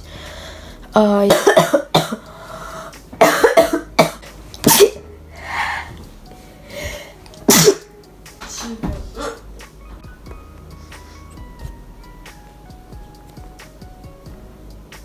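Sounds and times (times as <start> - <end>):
breaths: 0.0 - 0.9, 2.2 - 3.0, 5.4 - 7.2
girl coughing: 1.1 - 2.3, 3.2 - 5.0, 7.5 - 9.5.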